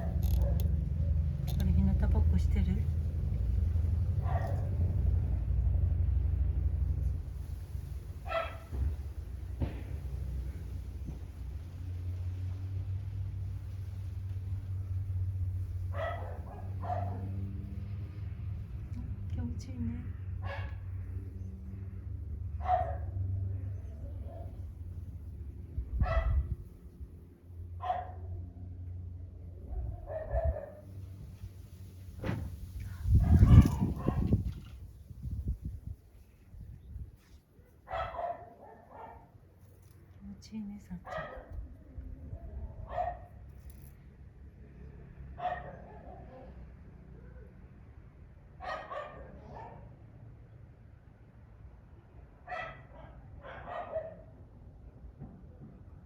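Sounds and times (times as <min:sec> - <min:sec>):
dog barking: 0:00.0 - 0:01.2, 0:04.2 - 0:04.9, 0:08.3 - 0:08.8, 0:15.9 - 0:17.4, 0:20.4 - 0:20.8, 0:22.6 - 0:23.2, 0:26.0 - 0:26.5, 0:27.8 - 0:28.3, 0:29.7 - 0:30.8, 0:32.9 - 0:34.3, 0:37.6 - 0:39.4, 0:41.0 - 0:41.6, 0:42.8 - 0:43.4, 0:45.4 - 0:46.6, 0:48.6 - 0:50.0, 0:52.4 - 0:54.3
rustling thump: 0:08.6 - 0:11.7, 0:31.4 - 0:34.9.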